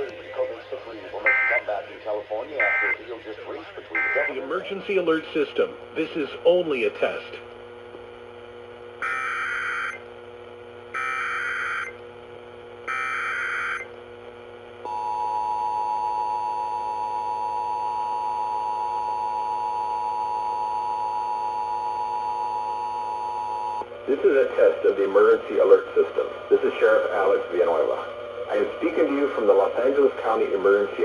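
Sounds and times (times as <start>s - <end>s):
steady two-tone alert signal: 0.0s - 4.4s
buzzy warbling data bursts: 0.0s - 5.0s.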